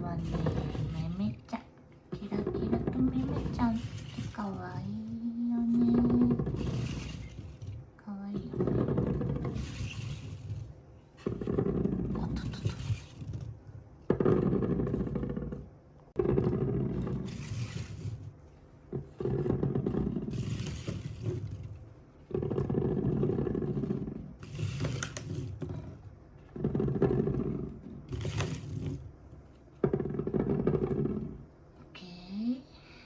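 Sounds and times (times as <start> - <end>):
balls rolling down wooden run: 0.0 - 31.8.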